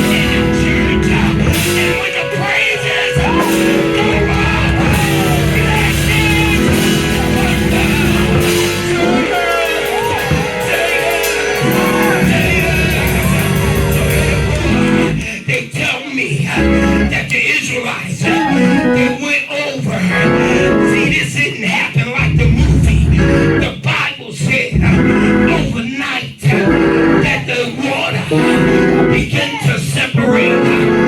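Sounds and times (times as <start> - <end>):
live band music: 0.0 - 15.4
voices singing: 0.0 - 31.0.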